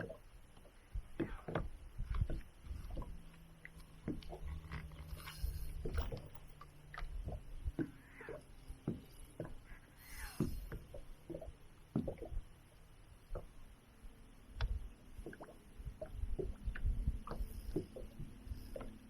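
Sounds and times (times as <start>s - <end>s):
thumps in a boat: 0.0s - 3.4s, 5.8s - 9.7s
water splashing: 0.0s - 12.5s.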